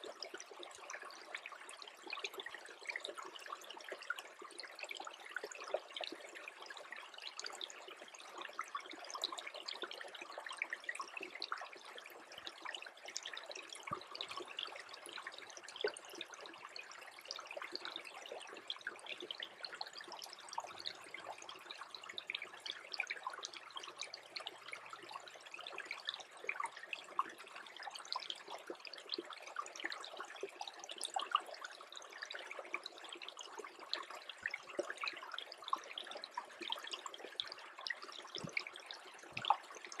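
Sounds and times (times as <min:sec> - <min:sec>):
tiny water drips: 0:00.0 - 0:40.0
creek trickling: 0:08.8 - 0:40.0.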